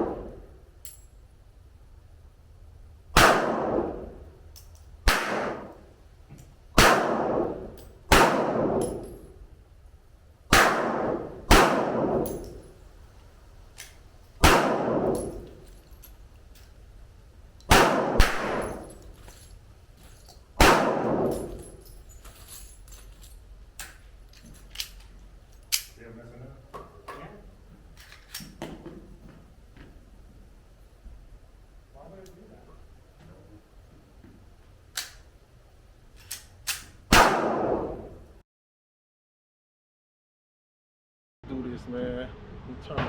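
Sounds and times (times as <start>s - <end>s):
gunshots: 3.2s - 4.2s, 5.0s - 5.8s, 6.8s - 9.0s, 10.5s - 12.4s, 14.4s - 15.5s, 17.7s - 18.9s, 20.6s - 21.7s, 37.1s - 38.2s.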